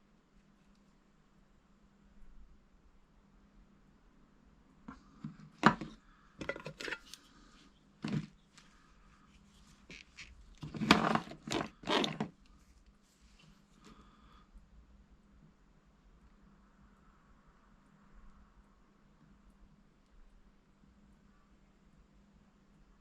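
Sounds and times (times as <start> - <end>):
faint steady hum: 0.0 - 23.0
tools and parts clattering: 5.6 - 7.2, 10.6 - 12.3.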